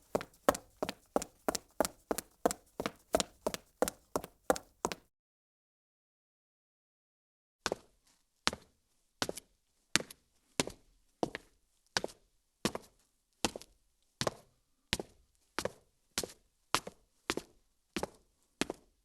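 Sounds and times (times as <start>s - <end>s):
high heels clicking on concrete: 0.0s - 5.0s.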